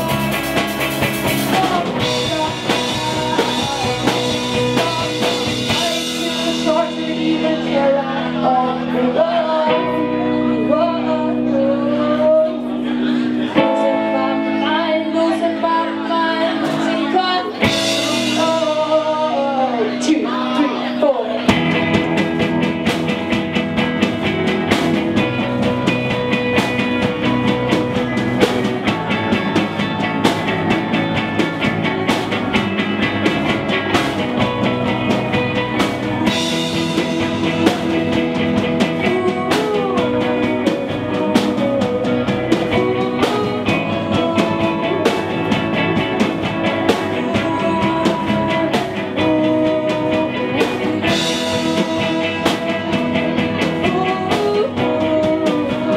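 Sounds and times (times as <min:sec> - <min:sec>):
drum-kit beat: 0:00.0 - 0:08.6, 0:21.4 - 0:55.9
electric guitars: 0:00.0 - 0:55.9.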